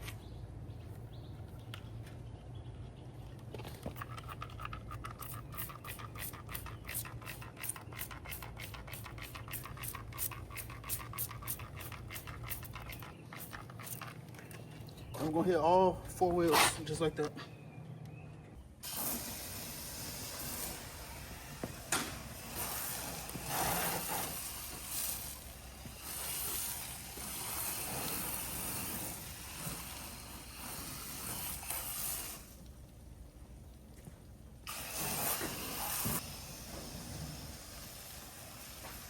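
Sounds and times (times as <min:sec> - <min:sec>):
liquid spraying onto car wheels: 0:03.9 - 0:14.2, 0:22.2 - 0:33.0, 0:34.6 - 0:39.0.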